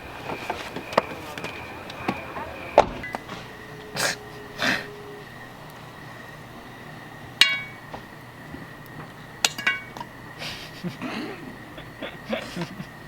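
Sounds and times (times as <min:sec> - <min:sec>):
faint high-pitched hum: 0:00.0 - 0:13.0
sharp metallic clinks: 0:07.3 - 0:08.2, 0:08.8 - 0:10.4.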